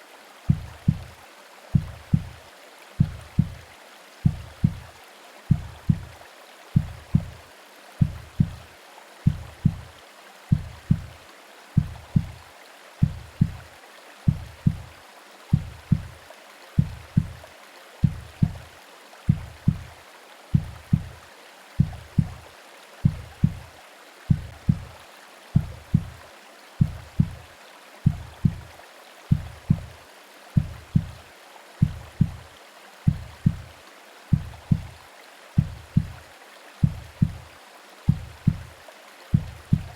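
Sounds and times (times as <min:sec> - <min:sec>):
rain: 0:00.0 - 0:39.9
white noise hiss: 0:00.0 - 0:39.9
heartbeat thumping: 0:00.5 - 0:02.4, 0:03.0 - 0:03.6, 0:04.2 - 0:04.9, 0:05.5 - 0:06.2, 0:06.8 - 0:07.4, 0:08.0 - 0:11.2, 0:11.8 - 0:12.4, 0:13.0 - 0:13.6, 0:14.3 - 0:16.2, 0:16.8 - 0:18.7, 0:19.3 - 0:19.9, 0:20.5 - 0:21.2, 0:21.8 - 0:23.7, 0:24.3 - 0:25.0, 0:25.6 - 0:26.2, 0:26.8 - 0:28.7, 0:29.3 - 0:30.0, 0:30.6 - 0:31.2, 0:31.8 - 0:32.5, 0:33.1 - 0:33.7, 0:34.3 - 0:35.0, 0:35.6 - 0:36.2, 0:36.8 - 0:37.5, 0:38.1 - 0:38.7, 0:39.3 - 0:39.9.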